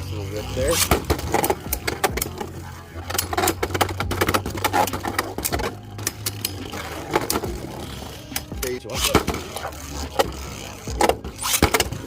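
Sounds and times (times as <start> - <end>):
spinning tops whirring: 0.0 - 12.0.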